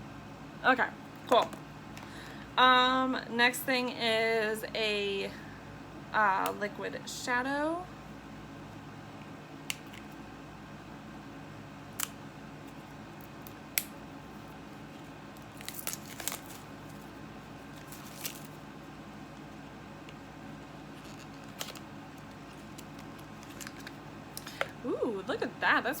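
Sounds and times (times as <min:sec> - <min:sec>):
steady low hum: 0:00.0 - 0:26.0
cardboard tearing and rustling: 0:15.4 - 0:18.6
cardboard box crinkling: 0:15.5 - 0:18.6.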